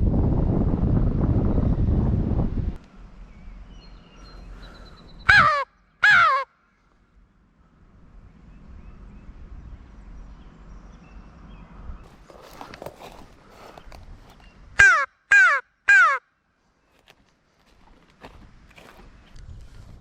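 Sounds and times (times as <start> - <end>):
crow call caws: 4.5 - 6.6, 14.8 - 16.3.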